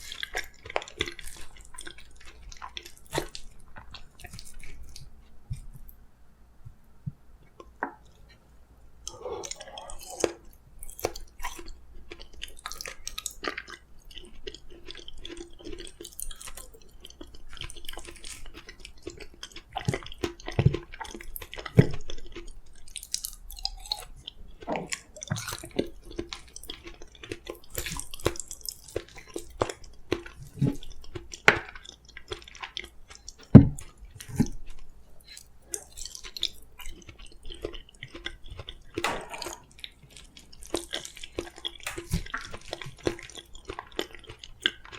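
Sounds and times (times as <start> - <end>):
wet squishy chewing: 9.0 - 44.9.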